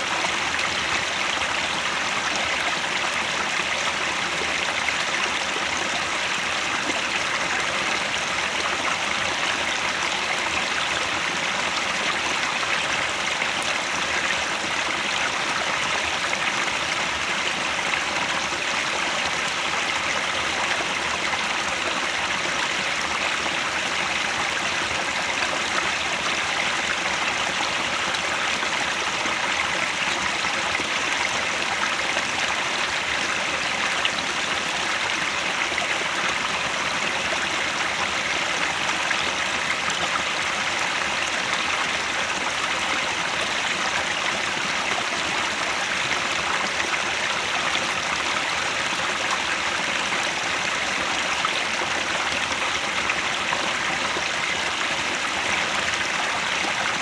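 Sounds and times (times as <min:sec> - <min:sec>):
stream flowing: 0:00.0 - 0:57.0.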